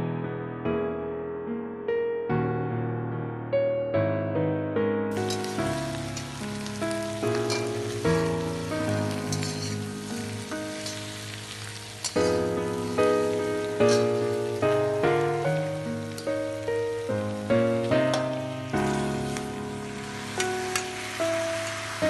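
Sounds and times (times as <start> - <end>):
piano music: 0.0 - 22.0
food sizzling in a pan: 5.1 - 22.0.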